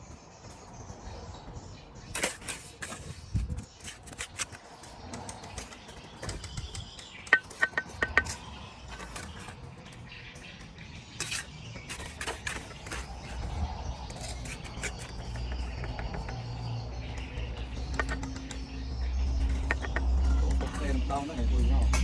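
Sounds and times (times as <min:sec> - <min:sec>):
steel trowel tapping on bricks: 0:02.0 - 0:22.0
ringing metallic taps: 0:05.1 - 0:09.5, 0:15.6 - 0:22.0.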